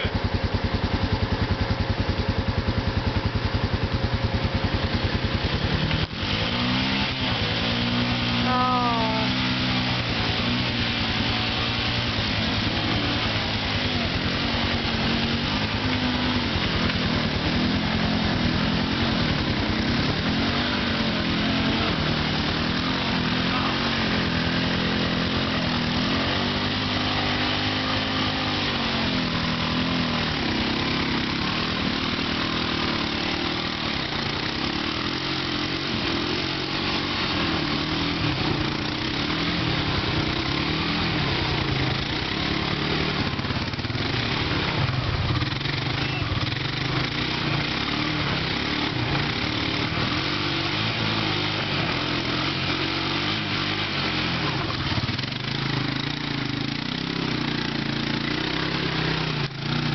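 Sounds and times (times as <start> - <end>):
atv engine revving: 0.0 - 59.9.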